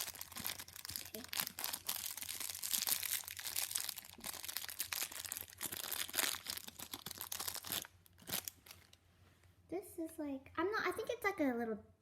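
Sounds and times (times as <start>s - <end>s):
plastic packaging crackling: 0.0s - 9.0s.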